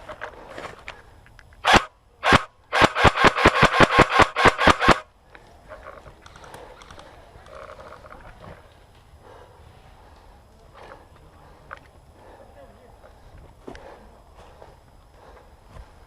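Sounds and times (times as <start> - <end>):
airsoft gun shots: 1.6 - 5.0.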